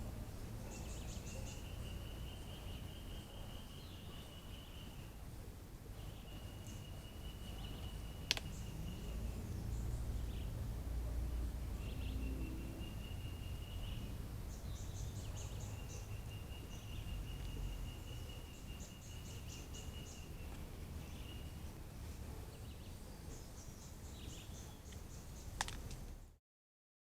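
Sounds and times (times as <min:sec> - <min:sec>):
low rumbling background noise: 0:00.0 - 0:26.4
high chirps and clicks: 0:07.7 - 0:09.0.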